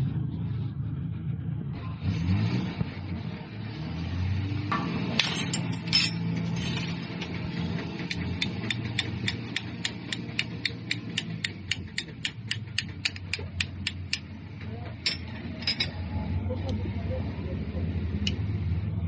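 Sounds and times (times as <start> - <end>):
engine humming: 0.0 - 19.0
sharp mechanical clicking: 8.0 - 14.3.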